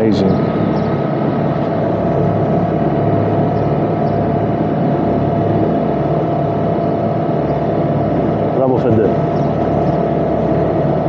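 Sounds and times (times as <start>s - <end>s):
boat engine humming: 0.0s - 11.0s.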